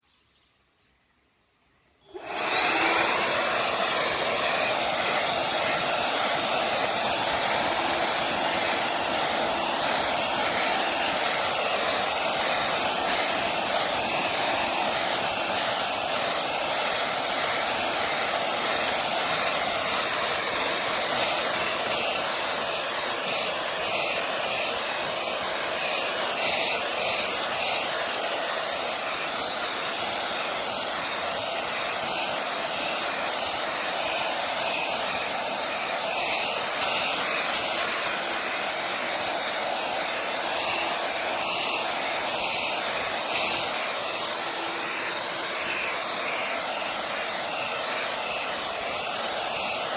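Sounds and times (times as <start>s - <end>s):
leaf blower running: 2.1s - 49.9s.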